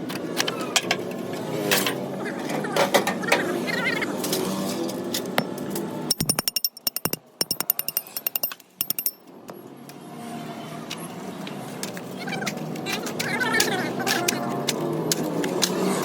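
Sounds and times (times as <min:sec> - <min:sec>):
sharp metallic clicks: 0:06.1 - 0:09.2.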